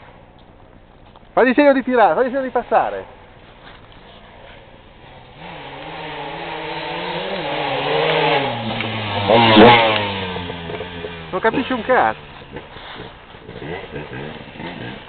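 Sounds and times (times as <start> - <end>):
motorcycle engine revving past: 4.2 - 15.0.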